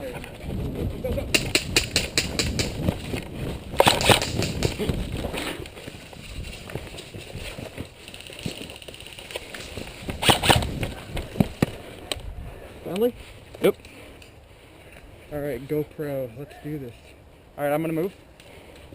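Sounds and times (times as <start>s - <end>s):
running footsteps: 0.2s - 12.2s
gear rattling: 3.8s - 10.8s.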